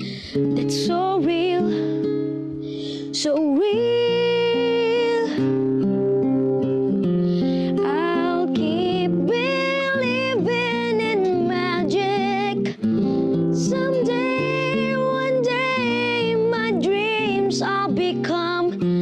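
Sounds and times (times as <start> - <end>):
strummed acoustic guitar: 0.0 - 19.0
high voice singing: 7.8 - 12.7, 13.6 - 18.8.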